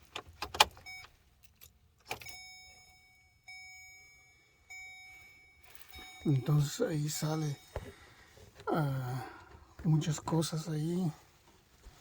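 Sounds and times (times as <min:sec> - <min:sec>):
dashboard warning chime: 0:00.8 - 0:01.2, 0:02.1 - 0:09.2.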